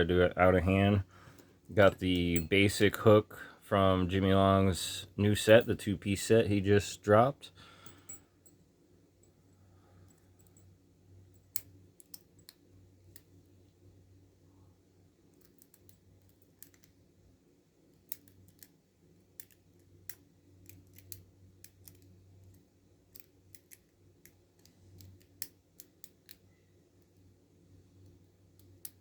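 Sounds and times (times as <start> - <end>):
low steady hum: 0.0 - 29.0
lock pick metallic clicks: 7.8 - 8.6, 11.3 - 13.3, 15.3 - 17.0, 17.9 - 27.2.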